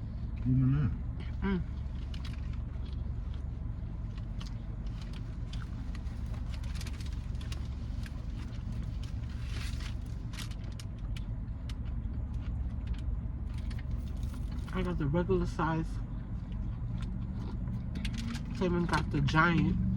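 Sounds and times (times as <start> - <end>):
car engine rumble inside cabin: 0.0 - 19.9
small clicks and crackles: 1.9 - 3.5, 4.1 - 14.9, 16.5 - 19.0.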